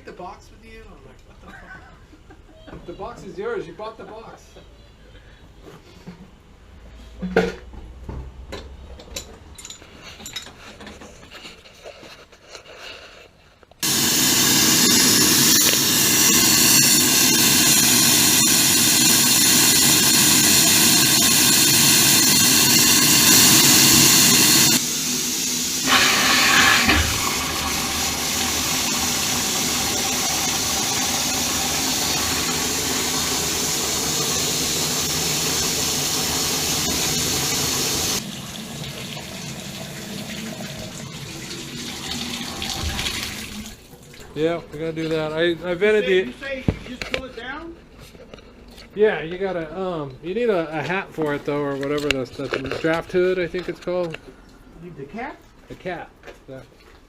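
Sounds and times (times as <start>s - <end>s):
water running through pipes: 13.8s - 46.6s.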